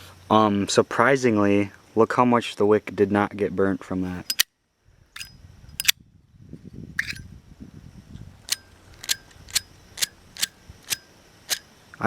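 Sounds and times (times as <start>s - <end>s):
lighter flint wheel clicking: 4.3s - 4.5s, 5.2s - 6.0s, 8.5s - 11.6s.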